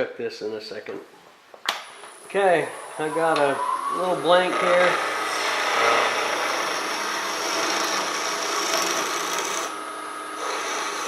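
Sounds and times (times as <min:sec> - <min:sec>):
high whine: 0:02.6 - 0:06.8
wood lathe motor hum: 0:02.8 - 0:11.0
tool scraping spinning wood: 0:03.2 - 0:09.8, 0:10.4 - 0:11.0.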